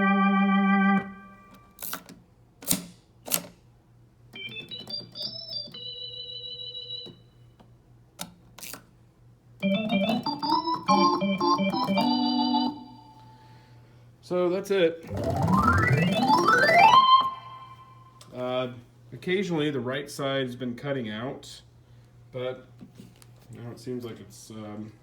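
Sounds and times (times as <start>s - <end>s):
organ playing chords: 0.0s - 1.6s, 4.4s - 7.1s, 9.6s - 13.5s, 15.0s - 18.2s.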